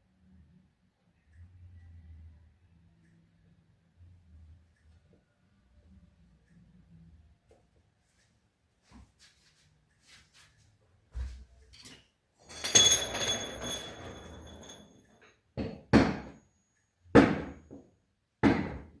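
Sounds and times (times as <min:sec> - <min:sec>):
metallic clang ringing: 0:12.5 - 0:15.0
hard knocks and thuds: 0:17.2 - 0:17.6.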